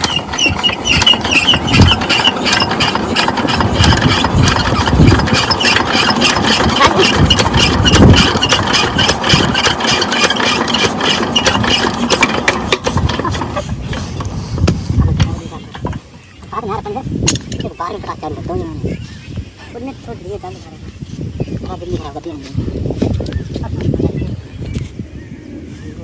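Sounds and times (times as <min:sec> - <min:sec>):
diesel engine chugging: 0:00.0 - 0:16.7.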